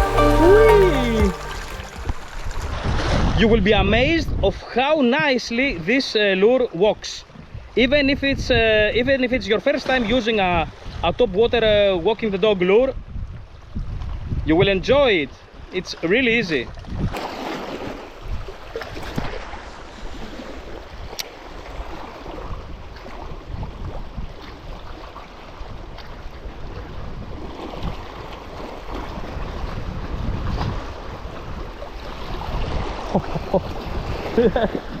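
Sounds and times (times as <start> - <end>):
sea waves washing on shore: 0.0 - 3.4, 17.2 - 35.0
wind buffeting microphone: 13.0 - 14.9, 16.8 - 17.2, 20.1 - 25.0, 25.6 - 35.0.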